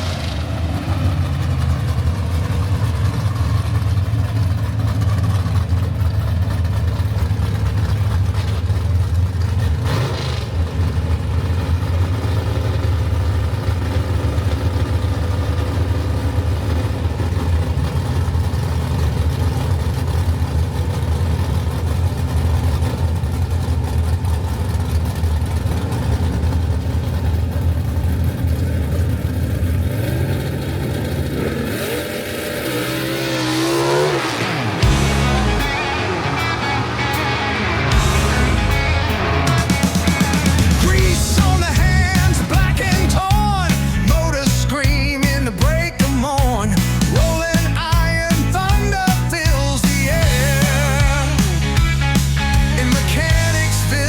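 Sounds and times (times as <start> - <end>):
racing car engine idling: 0.0 - 54.0
sharp burst of noise: 32.1 - 44.7.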